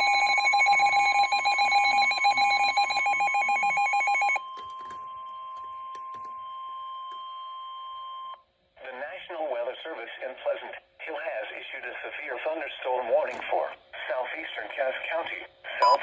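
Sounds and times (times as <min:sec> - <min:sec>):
pulsing electronic alarm beep: 0:00.0 - 0:04.4
steady alarm tone: 0:00.0 - 0:06.5.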